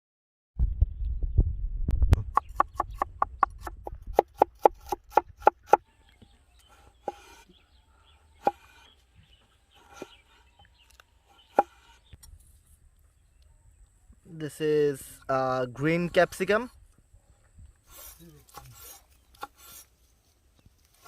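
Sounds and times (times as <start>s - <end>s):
knife chopping on wooden board: 2.3s - 5.8s.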